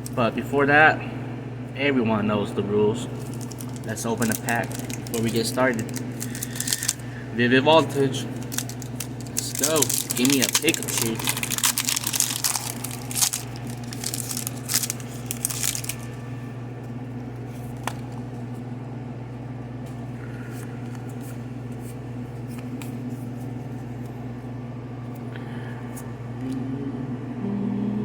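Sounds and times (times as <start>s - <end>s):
steady low hum: 0.0s - 28.0s
foil pack crinkling and tearing: 3.2s - 7.2s, 8.3s - 16.2s.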